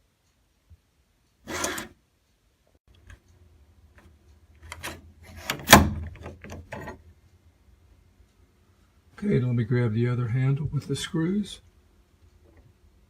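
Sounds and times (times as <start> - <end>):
door hardware rubbing scrape: 1.5 - 2.0, 4.6 - 7.0.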